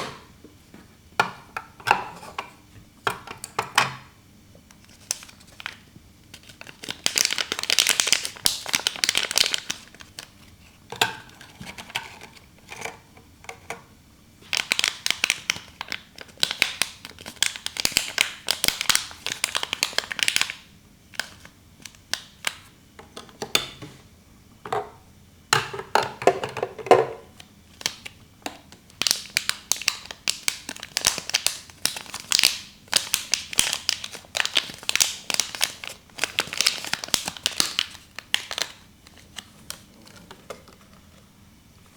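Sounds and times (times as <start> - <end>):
plastic packaging crinkling: 4.7 - 10.6, 14.4 - 22.6, 28.8 - 41.2.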